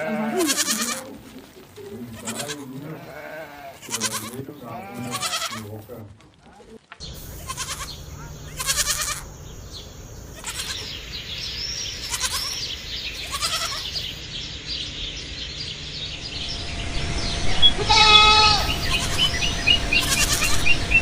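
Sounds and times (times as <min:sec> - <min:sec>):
low steady hum: 0:07.0 - 0:12.1, 0:13.8 - 0:21.0
animal high chirps: 0:07.0 - 0:14.2, 0:17.6 - 0:21.0
animal pulsing cry: 0:07.2 - 0:11.0, 0:17.7 - 0:21.0.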